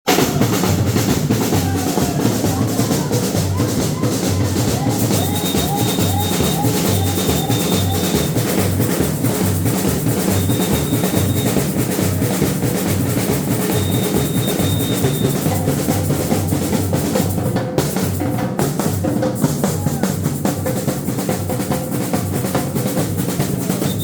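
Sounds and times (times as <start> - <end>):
samba percussion group: 0.0 - 24.0
low bass drum beats: 0.1 - 24.0
high steady tone: 13.5 - 15.6.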